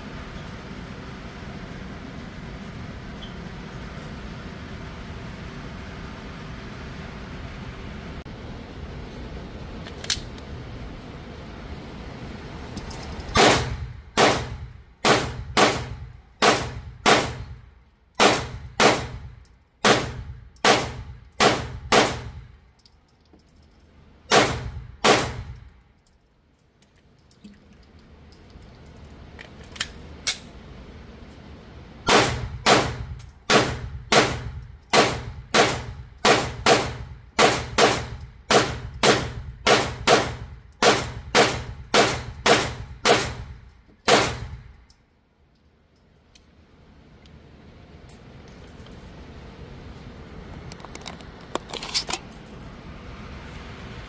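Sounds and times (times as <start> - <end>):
pistol shots: 13.4 - 17.5, 18.2 - 19.2, 19.8 - 22.4, 24.3 - 25.5, 32.1 - 43.5, 44.1 - 44.5.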